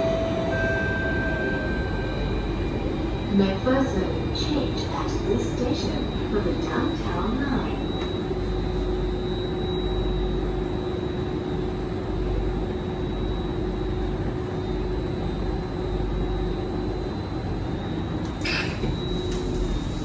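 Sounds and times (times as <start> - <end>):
thin high whine: 0.0 - 10.4
train rumble inside carriage: 0.0 - 20.0.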